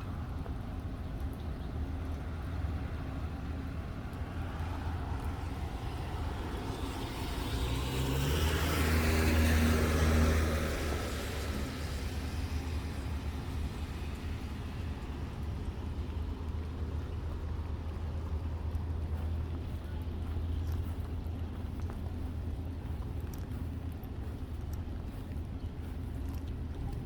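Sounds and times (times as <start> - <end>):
vehicle passing by: 3.7 - 22.0
steady low rumble: 10.7 - 27.0.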